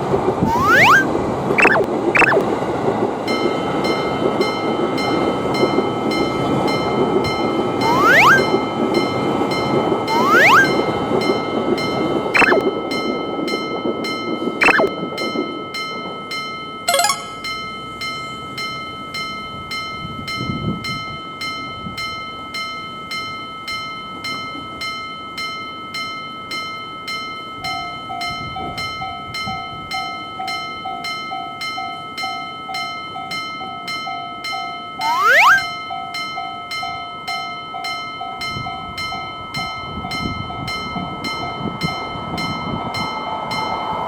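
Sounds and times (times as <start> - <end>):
pulsing tone: 0.5 - 2.5, 7.8 - 8.6, 10.1 - 10.8, 12.4 - 12.7, 14.6 - 14.9, 35.0 - 35.7.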